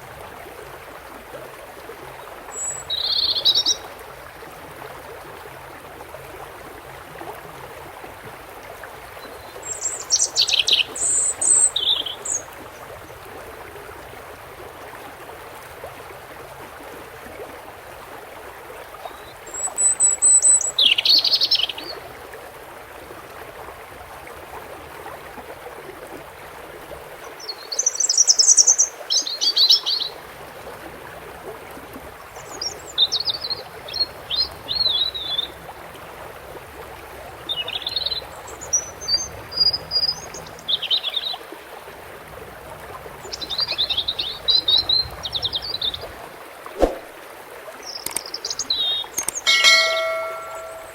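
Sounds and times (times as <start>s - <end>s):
running water: 0.0s - 50.9s
goldfinch twittering: 43.2s - 46.1s, 47.9s - 50.9s.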